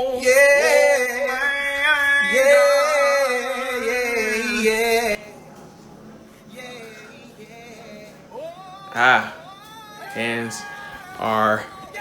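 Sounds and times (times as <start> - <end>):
man singing long held notes: 6.5 - 12.0.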